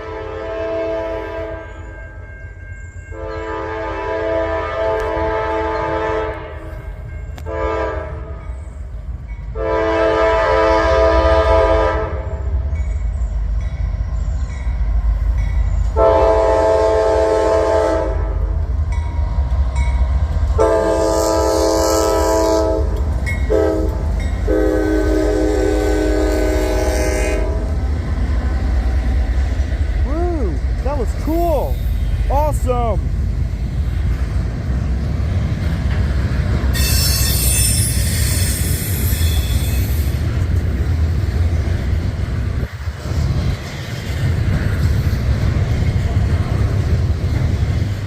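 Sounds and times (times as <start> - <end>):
locomotive air horn blasts: 0.0 - 1.7, 3.1 - 6.8, 7.4 - 8.4, 9.6 - 12.4, 16.0 - 18.5, 20.6 - 27.7, 36.7 - 40.1
locomotive and cars rumbling: 0.0 - 48.0.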